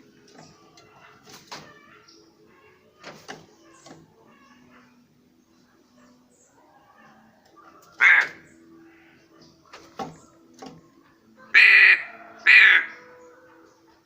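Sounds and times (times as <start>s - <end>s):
crow cawing: 8.0s - 9.2s, 11.5s - 13.0s.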